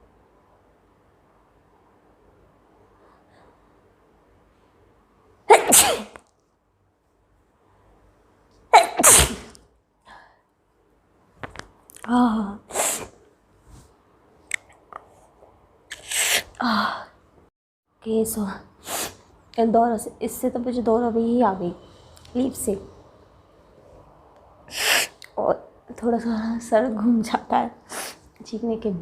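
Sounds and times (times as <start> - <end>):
woman sneezing loudly: 5.5 - 6.2, 8.7 - 9.6, 12.7 - 13.2.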